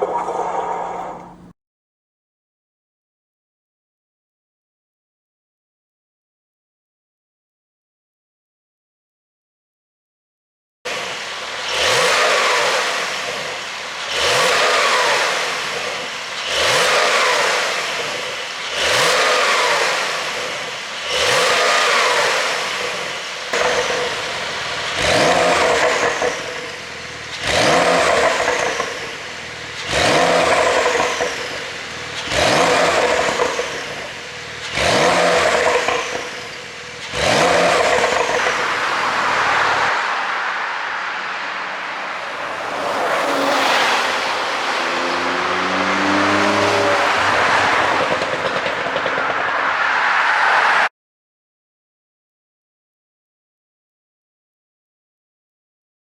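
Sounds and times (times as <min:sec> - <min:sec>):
car engine revving: 0:00.0 - 0:01.5, 0:10.9 - 0:50.9
exhaust crackling on overrun: 0:00.0 - 0:01.5, 0:10.9 - 0:50.9.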